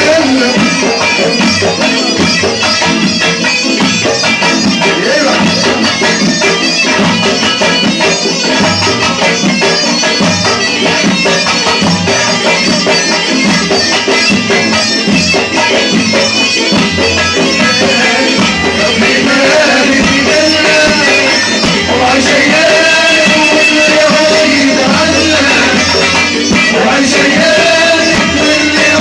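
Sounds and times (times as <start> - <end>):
steady drum beat: 0.0 - 29.0.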